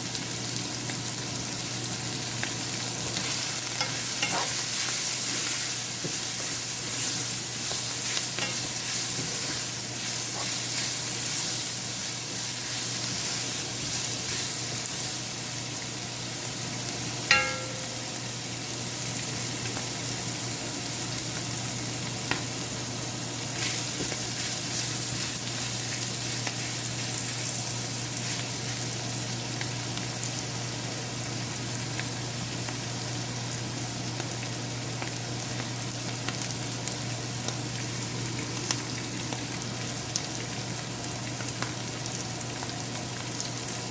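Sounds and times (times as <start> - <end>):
food sizzling in a pan: 0.0 - 43.9
utensil stirring food: 2.4 - 15.2
metal utensil clinking on pan: 17.3 - 18.2.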